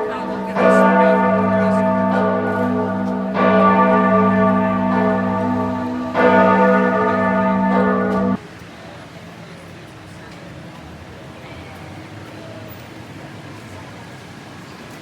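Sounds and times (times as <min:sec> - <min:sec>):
large church bell tolling: 0:00.0 - 0:08.4.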